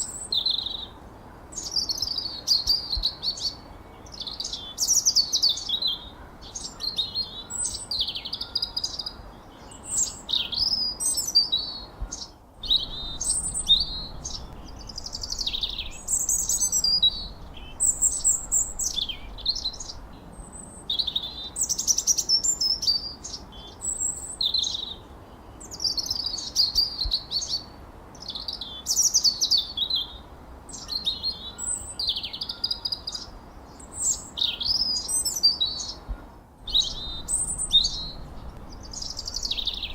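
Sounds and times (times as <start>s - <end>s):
faint steady background hiss: 0.0s - 39.9s
songbirds chirping and whistling: 0.0s - 39.9s.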